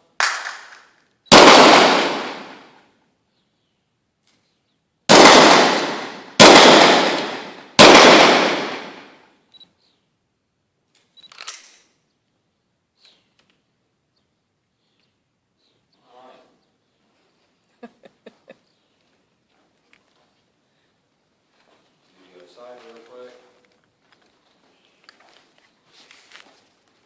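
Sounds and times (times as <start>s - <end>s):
revolver shots echoing: 1.3s - 2.8s, 5.1s - 9.2s.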